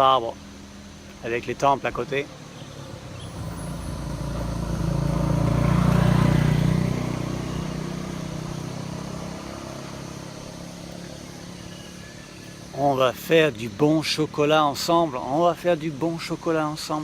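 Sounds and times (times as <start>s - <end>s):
vehicle passing by: 2.2s - 12.7s.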